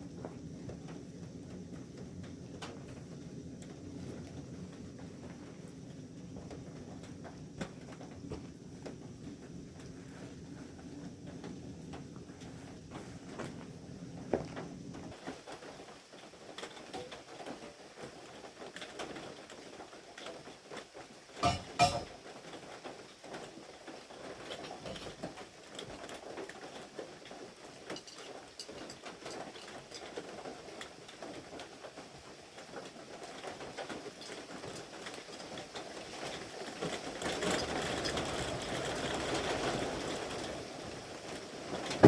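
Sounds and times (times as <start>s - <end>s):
rain pattering: 0.0s - 42.0s
loud knocks: 21.4s - 22.1s.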